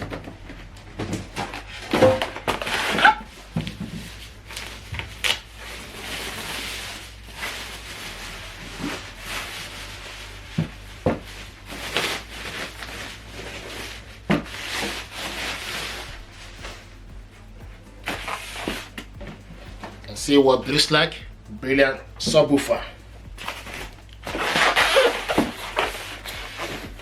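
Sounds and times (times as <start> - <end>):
packaging rubbing and rustling: 2.4 - 16.4.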